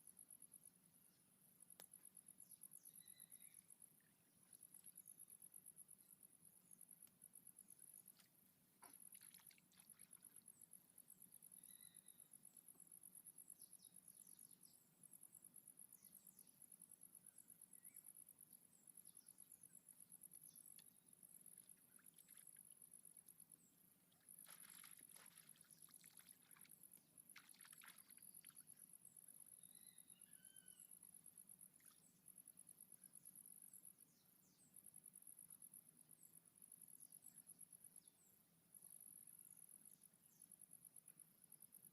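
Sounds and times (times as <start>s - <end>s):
bird chirps: 29.6s - 30.9s.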